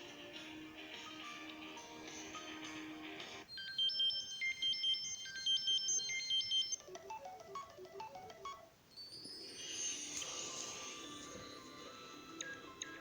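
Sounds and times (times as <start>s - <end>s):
ringtones playing: 0.0s - 13.0s
high chiming melody: 6.6s - 13.0s.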